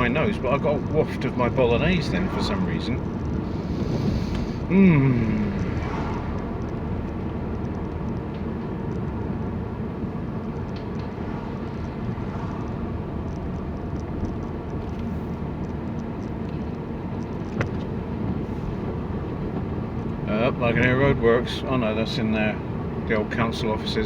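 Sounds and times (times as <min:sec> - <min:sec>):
engine and tyre rumble: 0:00.0 - 0:24.0
faint ticks: 0:05.2 - 0:09.2, 0:10.4 - 0:17.9.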